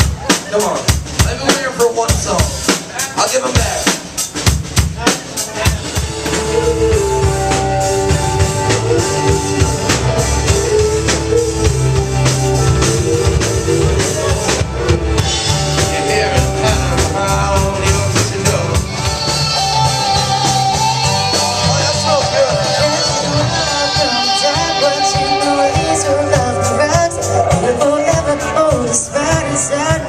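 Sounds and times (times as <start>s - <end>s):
drum kit beat: 0.0s - 30.0s
guitar and bass: 5.6s - 30.0s
person singing: 6.2s - 30.0s.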